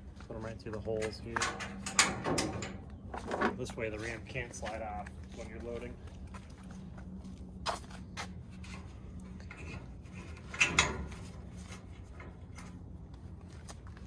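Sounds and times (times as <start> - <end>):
metal rattle: 1.0 - 3.6, 8.7 - 12.7
ramp clips clicking on metal deck: 1.0 - 3.6, 9.5 - 12.7.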